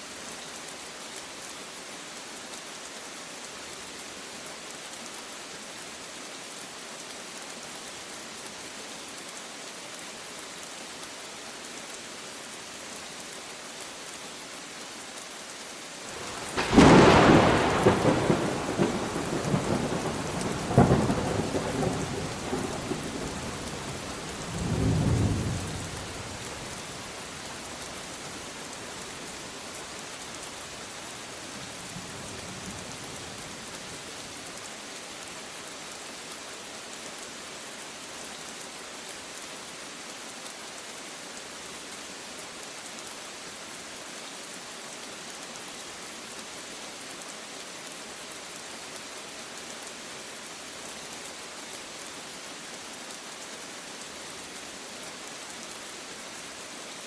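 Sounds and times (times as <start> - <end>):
steady rain falling: 0.0 - 57.0
thunderclap rumbling: 16.2 - 23.0.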